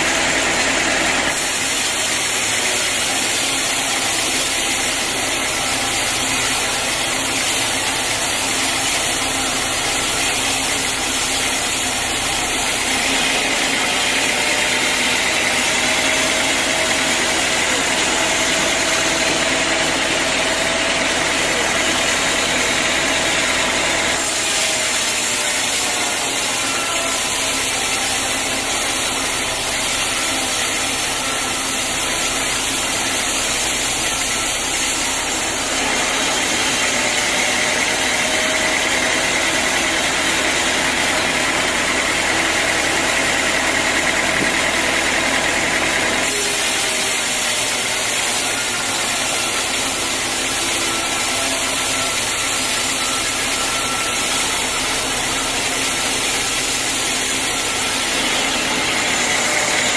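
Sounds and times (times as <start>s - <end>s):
high mechanical whine: 0.0s - 59.9s
sawmill machinery drone: 0.0s - 59.9s.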